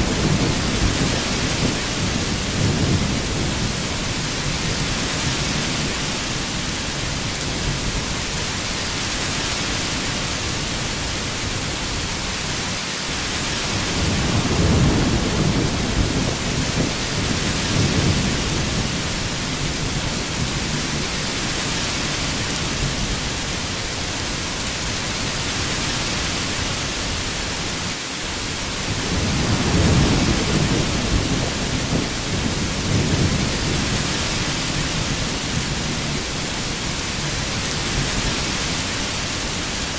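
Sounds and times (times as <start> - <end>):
low thunder rumbling: 0.0 - 6.1, 13.8 - 21.2, 28.7 - 38.2
heavy rain hissing: 0.0 - 39.9.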